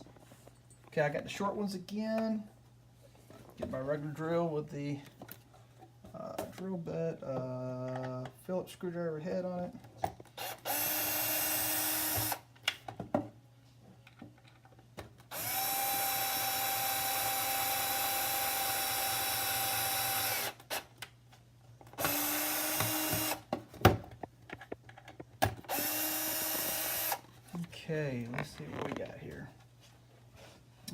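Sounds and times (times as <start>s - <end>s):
cordless drill driving screws: 10.4s - 12.4s, 15.3s - 20.9s, 22.0s - 23.4s, 25.7s - 27.2s.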